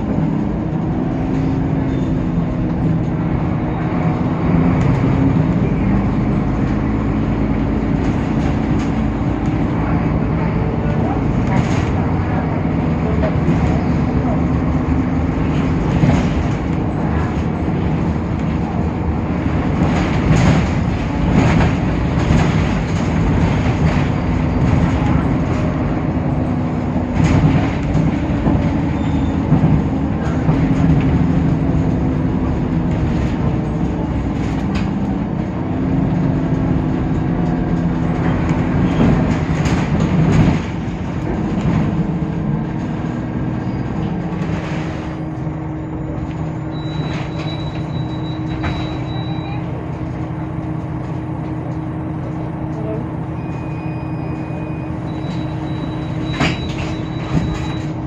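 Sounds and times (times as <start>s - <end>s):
bus body knocks and rattles: 0.0s - 53.4s, 54.0s - 58.0s
bus diesel engine drone: 0.0s - 58.0s.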